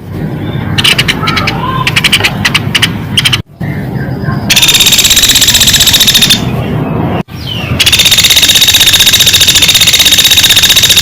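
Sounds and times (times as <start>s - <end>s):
woodpecker rattling trill: 0.8s - 3.4s, 4.5s - 6.5s, 7.8s - 11.0s.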